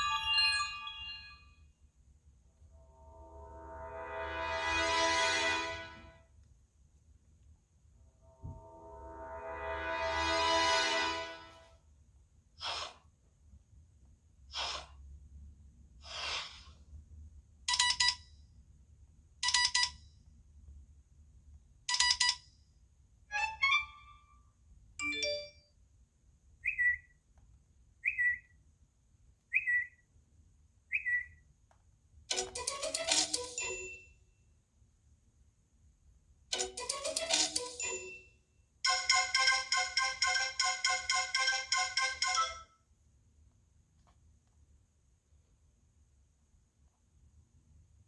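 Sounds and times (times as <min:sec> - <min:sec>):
bell-like chimes: 0:00.0 - 0:01.6, 0:25.0 - 0:25.6, 0:33.6 - 0:34.2, 0:37.7 - 0:42.6.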